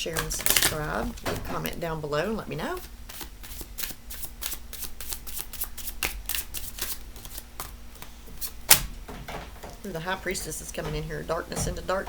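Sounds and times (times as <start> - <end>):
cards being shuffled: 0.1 - 1.8, 2.8 - 8.9.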